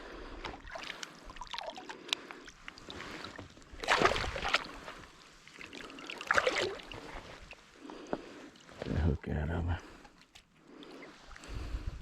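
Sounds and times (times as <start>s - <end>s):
splashing in shallow water: 0.4s - 7.6s.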